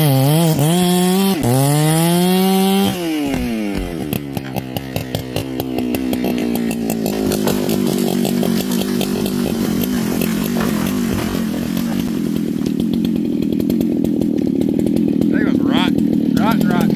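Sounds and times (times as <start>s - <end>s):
chainsaw cutting at high revs: 0.0s - 16.9s.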